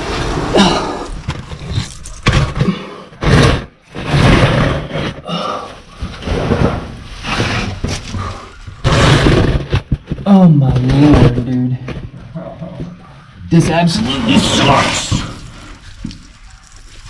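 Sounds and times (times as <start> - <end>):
heavy breathing and grunting: 0.0 - 3.3, 4.8 - 6.3
scraping against rock: 0.0 - 11.5.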